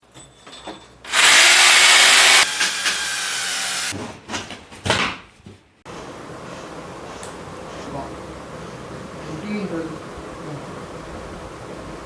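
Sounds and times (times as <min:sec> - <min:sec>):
power drill running: 0:01.1 - 0:03.9.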